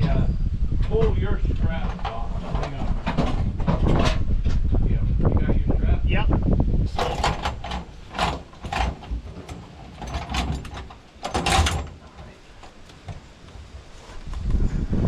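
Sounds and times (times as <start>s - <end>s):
conveyor chain clanking and scraping: 0.9s - 4.3s, 6.9s - 13.4s.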